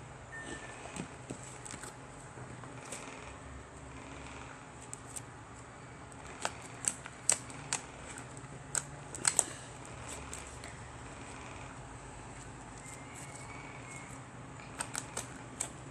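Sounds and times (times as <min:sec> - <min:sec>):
faint background hum: 0:00.0 - 0:15.9.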